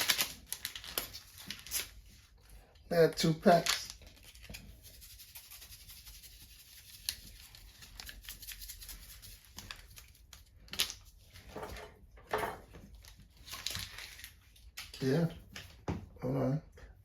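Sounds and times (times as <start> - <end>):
foil packets crinkling: 0.0 - 5.0, 6.7 - 11.5, 12.7 - 15.8.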